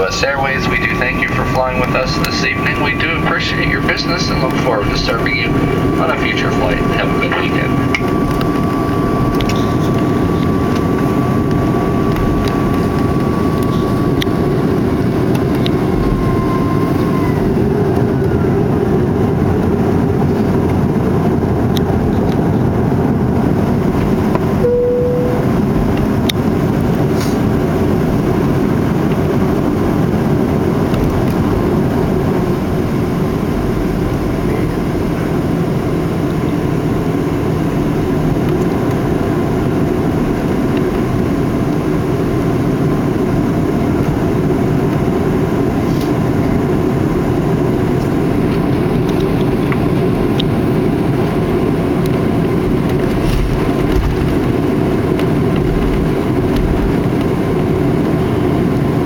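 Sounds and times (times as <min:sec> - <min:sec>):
jet airliner cabin rumble: 0:00.0 - 0:59.0
faint steady tone: 0:24.6 - 0:25.6.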